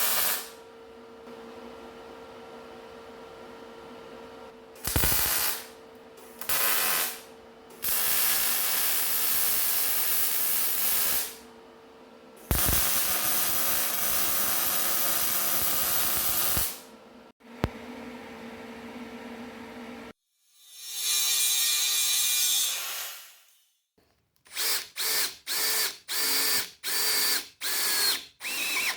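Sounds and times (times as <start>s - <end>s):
welding hiss: 0.0s - 0.6s, 4.8s - 11.4s, 12.4s - 16.9s.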